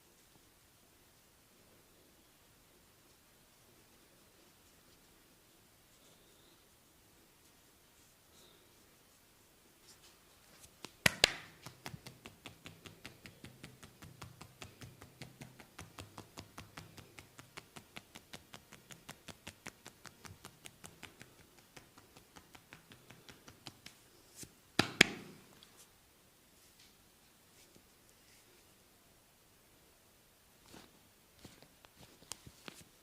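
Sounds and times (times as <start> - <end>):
rapid massage tapping: 10.6 - 24.2, 24.8 - 25.4.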